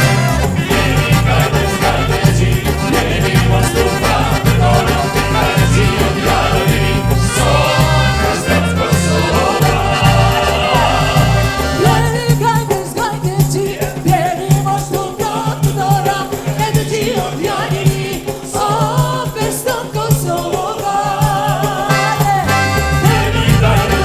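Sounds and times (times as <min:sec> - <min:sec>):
upbeat song with pulsing bass: 0:00.0 - 0:12.6, 0:21.9 - 0:24.0
person singing: 0:00.0 - 0:15.1, 0:21.2 - 0:24.0.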